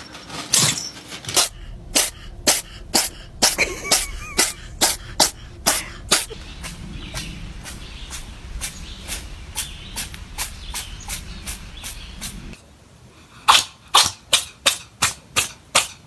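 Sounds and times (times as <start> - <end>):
low hum: 0.0 - 12.6
rapid sneezes: 2.0 - 9.2, 13.4 - 16.0.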